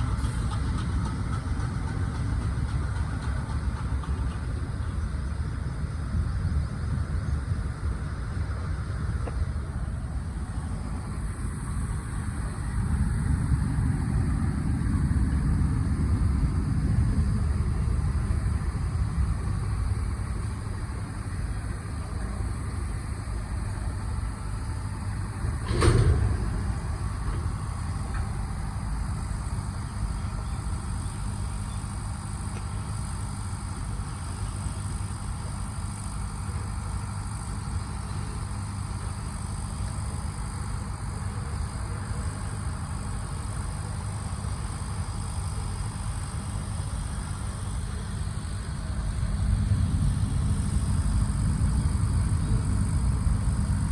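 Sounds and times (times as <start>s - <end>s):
truck engine rumbling: 0.0s - 53.9s.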